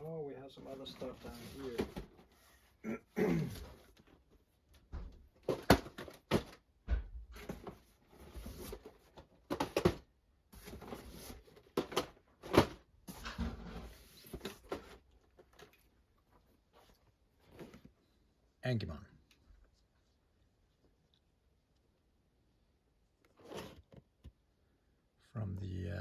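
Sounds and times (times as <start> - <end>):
cardboard boxes knocking and rustling: 0.9 - 2.5, 3.5 - 15.7.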